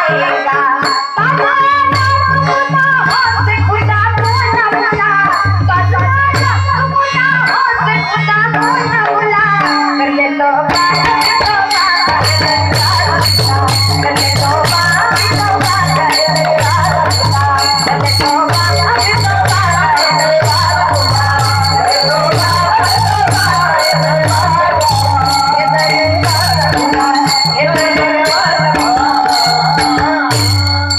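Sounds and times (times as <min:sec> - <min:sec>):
high shaker percussion beat: 0:10.7 - 0:30.9.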